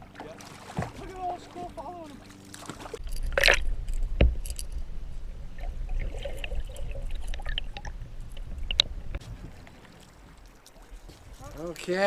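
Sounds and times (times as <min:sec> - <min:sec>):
water splashing and trickling: 0:00.0 - 0:12.0
steady low rumble: 0:03.0 - 0:09.7.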